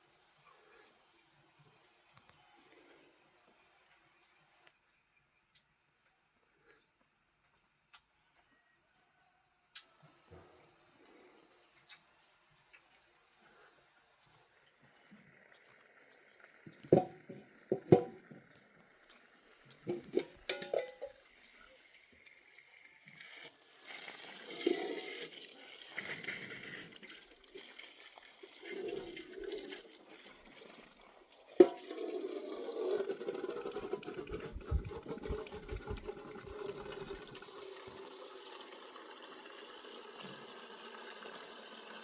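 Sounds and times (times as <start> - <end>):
water pouring and sloshing: 15.0 - 38.6.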